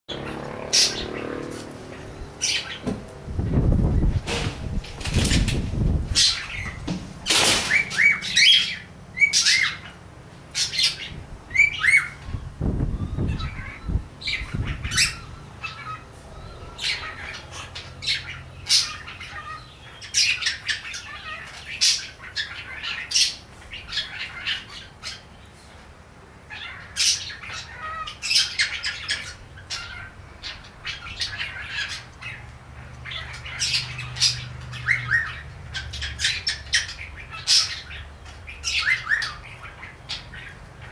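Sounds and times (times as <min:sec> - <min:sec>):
cockatiel chirping and squawking: 0:13.0 - 0:16.0, 0:26.5 - 0:32.4, 0:33.0 - 0:40.9.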